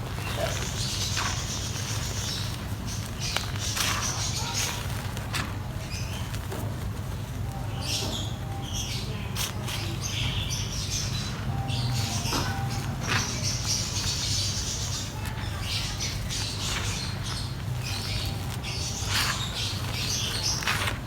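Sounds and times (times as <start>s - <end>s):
dry mud crumbling: 11.8s - 21.0s.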